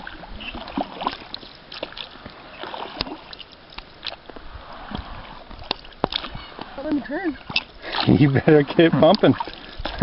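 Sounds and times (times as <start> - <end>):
water lapping against boat: 0.0 - 10.0.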